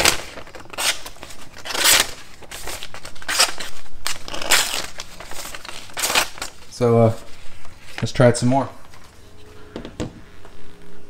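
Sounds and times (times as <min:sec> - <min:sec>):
knife tearing through paper: 0:00.0 - 0:07.3.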